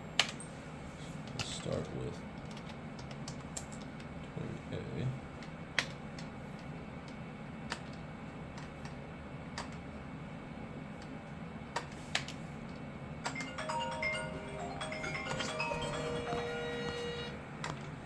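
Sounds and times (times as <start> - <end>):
low machine hum: 0.0 - 18.0
phone ringtone marimba melody: 13.3 - 17.4.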